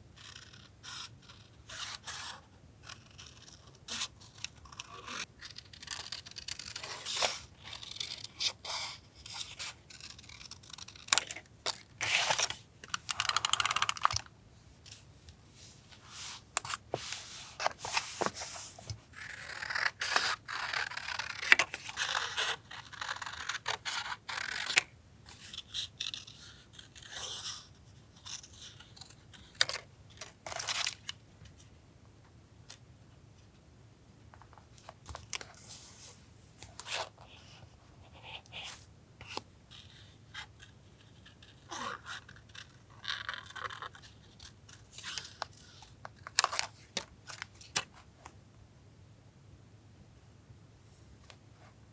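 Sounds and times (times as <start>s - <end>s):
paper rustling: 15.6s - 19.0s.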